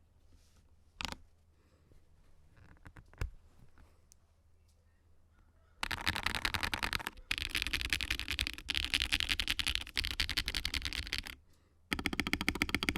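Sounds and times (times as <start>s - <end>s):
mechanical keyboard typing: 1.0s - 1.2s, 5.8s - 12.9s.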